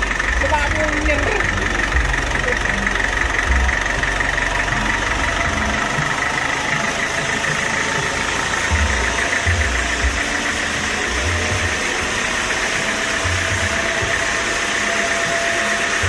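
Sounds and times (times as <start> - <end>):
engine running: 0.0 - 16.0.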